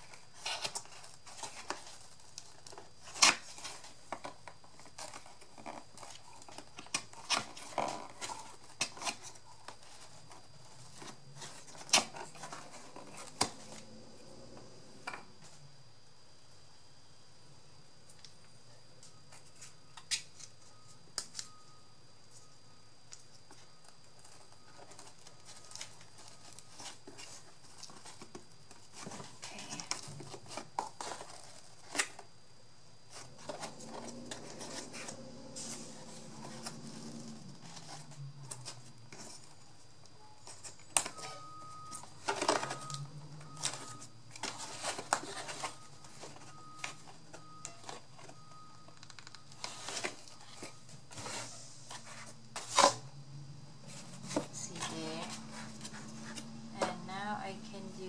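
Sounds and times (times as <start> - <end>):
paper and card rustling: 24.2 - 32.2, 53.8 - 57.0.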